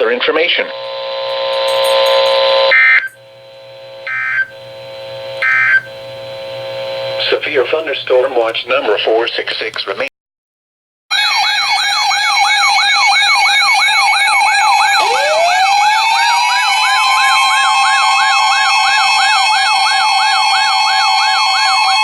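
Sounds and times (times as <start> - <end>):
siren winding up: 0.7 - 7.6, 11.1 - 22.0
siren yelp tone: 0.8 - 7.2, 11.1 - 22.0.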